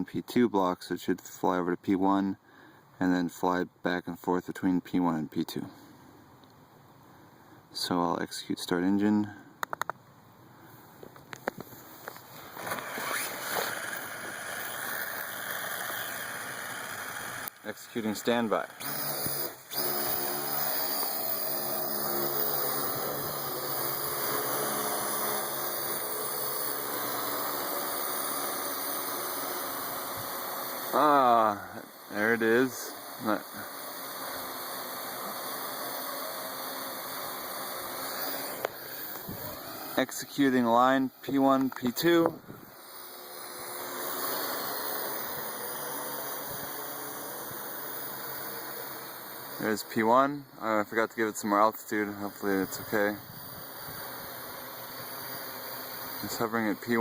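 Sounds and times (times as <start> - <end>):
quadcopter propellers humming: 10.7 - 57.0.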